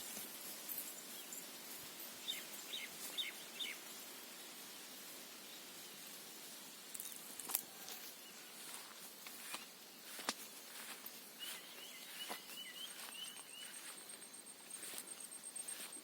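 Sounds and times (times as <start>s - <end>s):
faint outdoor ambience: 0.0s - 16.0s
bird chirping: 2.2s - 4.0s, 8.2s - 16.0s.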